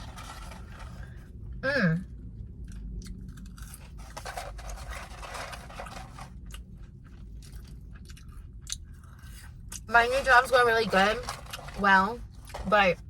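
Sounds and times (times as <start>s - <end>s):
chewing with soft crunches: 2.2s - 9.9s.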